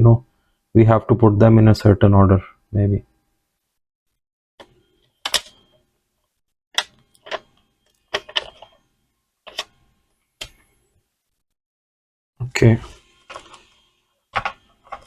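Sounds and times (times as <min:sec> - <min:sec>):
clicks and taps on laptop: 0:14.4 - 0:15.0.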